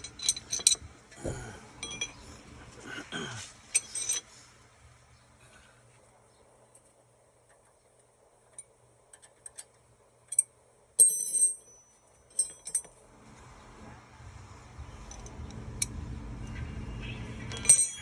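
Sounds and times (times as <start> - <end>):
metal tools clinking on steel: 0.0 - 0.8, 1.7 - 2.3, 3.7 - 4.3, 10.2 - 13.0, 17.5 - 18.0.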